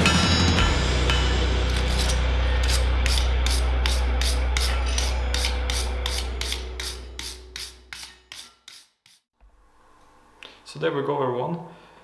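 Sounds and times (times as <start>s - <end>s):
hand tool scraping steel: 1.1s - 9.3s.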